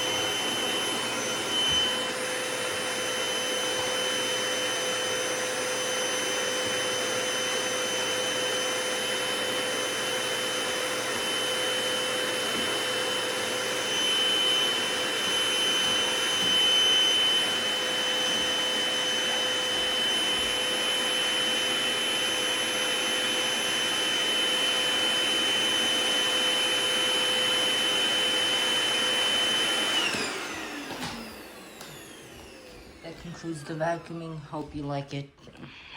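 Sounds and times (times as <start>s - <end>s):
vacuum cleaner running: 0.0s - 35.9s.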